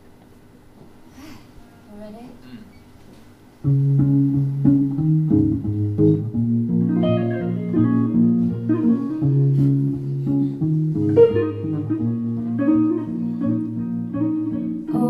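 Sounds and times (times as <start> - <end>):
low bass line: 3.6 - 15.0
plucked guitar notes: 3.6 - 15.0.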